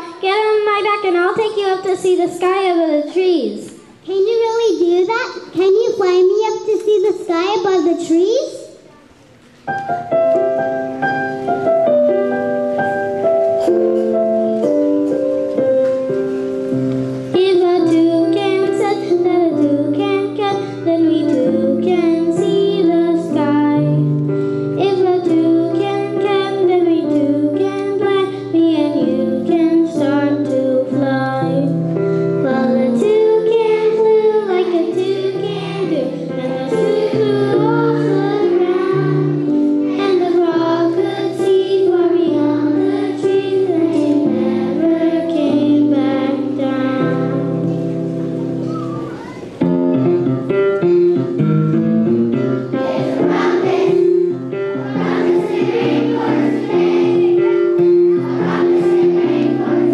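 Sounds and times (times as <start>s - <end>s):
instrumental accompaniment: 8.8s - 59.9s
children singing: 32.5s - 47.5s, 52.7s - 59.9s.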